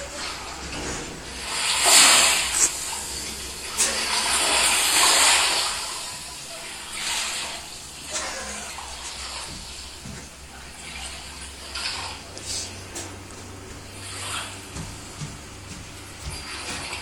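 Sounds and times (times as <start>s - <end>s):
water splashing and rushing: 0.0s - 10.1s.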